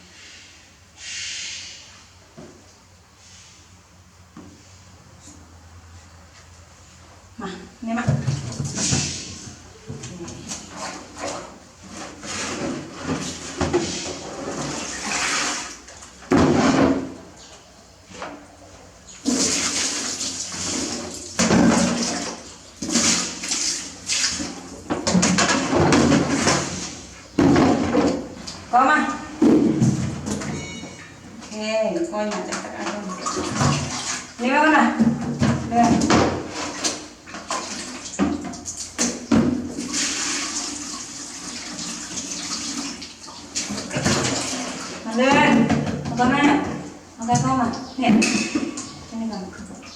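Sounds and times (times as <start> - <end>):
bath water splashing and pouring: 11.8 - 17.0, 19.2 - 27.1, 33.0 - 34.4, 36.3 - 45.0
bath water running: 36.3 - 45.6.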